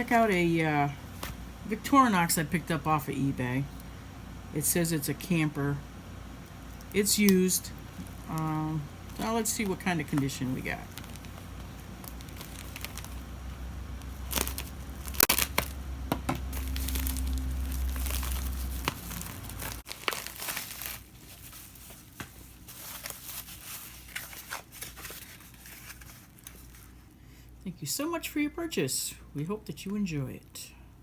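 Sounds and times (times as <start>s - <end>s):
low hum: 0.0s - 19.9s
packaging crinkling and tearing: 6.7s - 13.4s, 14.0s - 27.0s.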